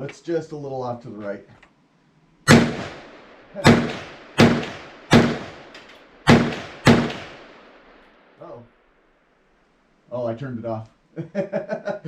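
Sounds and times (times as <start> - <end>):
pistol shots: 2.5 - 8.0.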